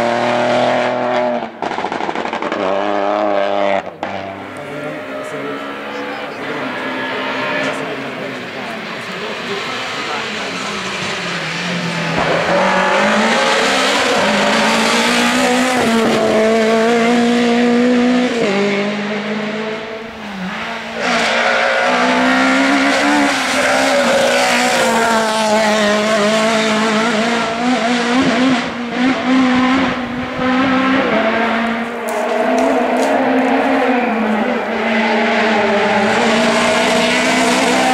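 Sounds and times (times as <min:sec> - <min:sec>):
rally car engine revving hard: 0:00.0 - 0:37.9
sharp exhaust pops: 0:01.6 - 0:02.9.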